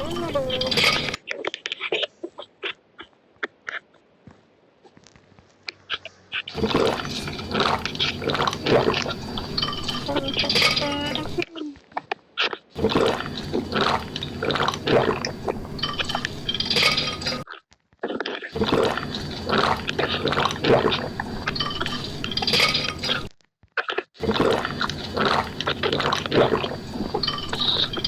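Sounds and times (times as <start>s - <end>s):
drinking mouth sounds: 0.0s - 1.2s, 6.5s - 11.6s, 12.4s - 17.4s, 18.0s - 23.3s, 24.2s - 28.0s.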